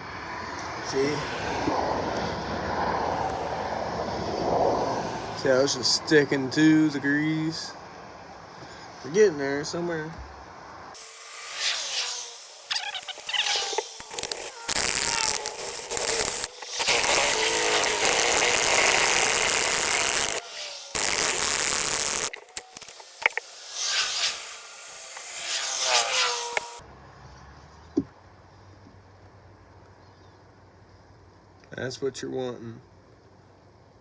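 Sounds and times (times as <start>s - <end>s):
power drill running: 11.0s - 26.8s.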